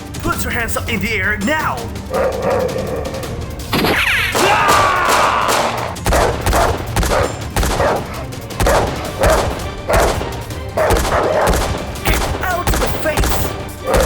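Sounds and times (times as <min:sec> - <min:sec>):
rapid gunshots: 0:03.6 - 0:14.0.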